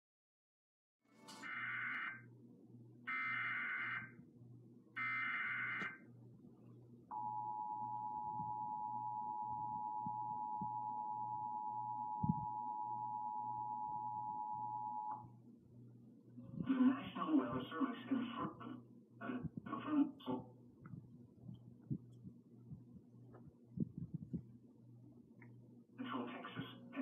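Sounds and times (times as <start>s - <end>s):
low buzzing hum: 1.2s - 16.9s, 20.5s - 26.0s.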